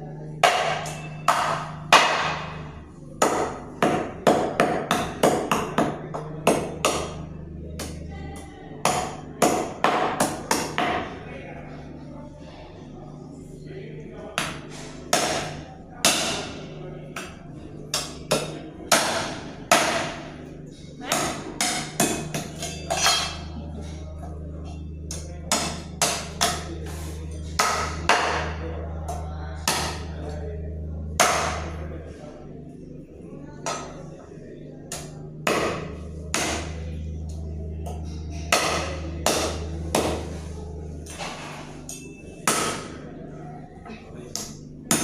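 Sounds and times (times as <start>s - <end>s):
blade chopping meat and bone: 0.4s - 2.5s, 14.4s - 16.6s, 17.2s - 20.2s, 21.0s - 23.4s, 25.1s - 26.7s, 27.5s - 30.1s, 31.2s - 31.7s, 34.9s - 36.8s, 38.3s - 40.3s, 42.5s - 43.0s.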